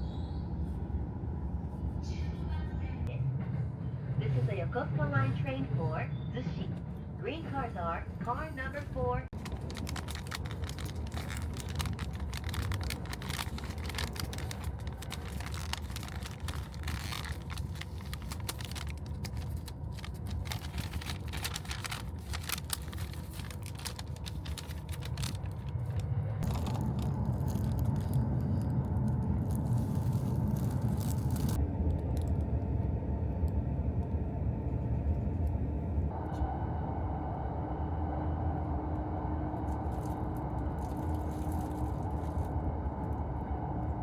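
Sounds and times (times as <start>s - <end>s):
train rumbling: 0.0s - 44.0s.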